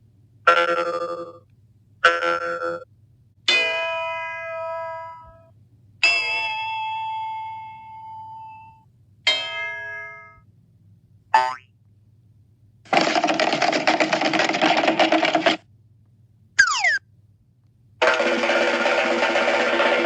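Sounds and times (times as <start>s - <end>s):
quickly rising pitch effect: 16.6s - 17.0s.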